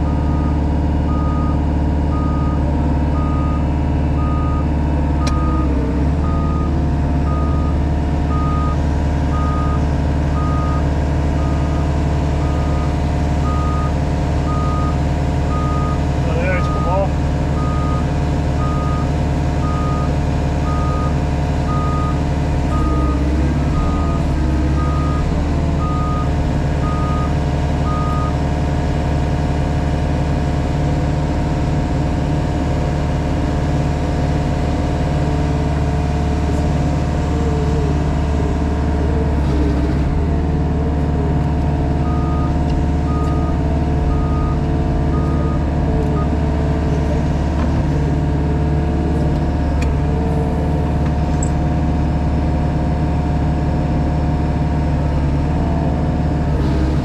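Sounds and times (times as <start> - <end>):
reversing alarm beeping: 0.0 - 2.6, 3.2 - 9.8, 10.4 - 28.4, 42.0 - 46.4
engine running: 0.0 - 57.0.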